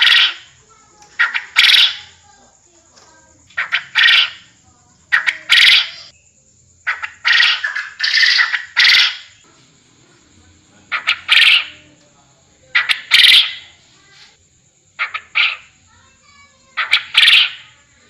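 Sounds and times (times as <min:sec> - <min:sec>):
quail calling: 0:00.0 - 0:02.2, 0:03.5 - 0:04.5, 0:05.1 - 0:06.2, 0:06.9 - 0:09.4, 0:10.9 - 0:12.0, 0:12.7 - 0:13.8, 0:15.0 - 0:15.8, 0:16.7 - 0:17.8.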